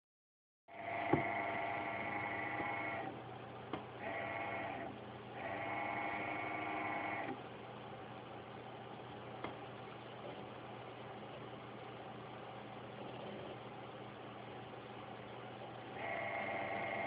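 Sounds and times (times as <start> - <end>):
graphics card buzzing whine: 0.7 - 7.5, 9.4 - 17.0
steady hum: 0.7 - 17.0.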